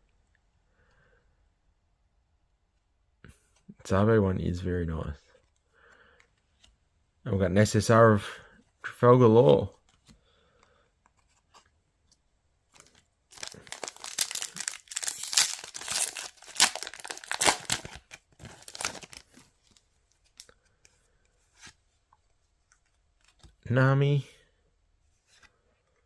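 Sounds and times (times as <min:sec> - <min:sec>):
wrapper tearing and crinkling: 0:13.3 - 0:19.4.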